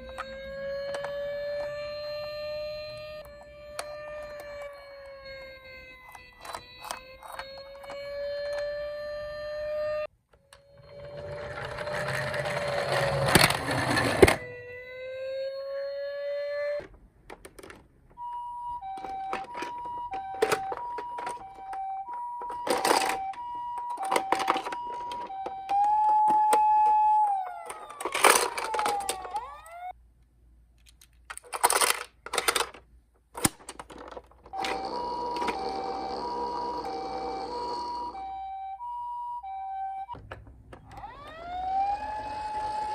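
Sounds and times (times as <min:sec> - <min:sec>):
two-note toy siren: 0:00.0 - 0:17.0, 0:18.2 - 0:30.0, 0:34.5 - 0:42.9
wailing toy siren: 0:00.0 - 0:17.0, 0:18.2 - 0:30.0, 0:34.4 - 0:42.9
clicks and rattles: 0:27.6 - 0:29.6, 0:30.7 - 0:34.8.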